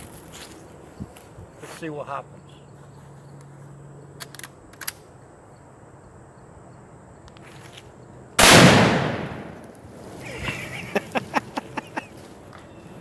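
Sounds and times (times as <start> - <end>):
explosive blast with echo: 8.4 - 9.8.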